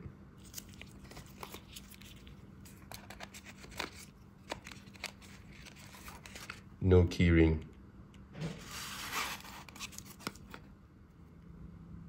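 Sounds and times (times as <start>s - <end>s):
handling rustling: 0.4s - 6.7s, 8.5s - 10.7s.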